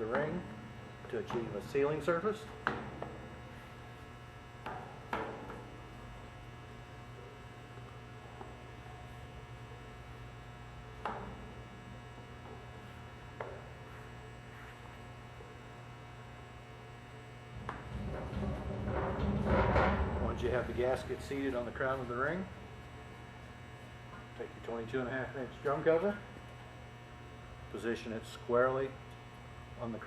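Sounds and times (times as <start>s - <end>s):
electrical mains hum: 0.0s - 30.0s
handling noise: 17.5s - 23.1s.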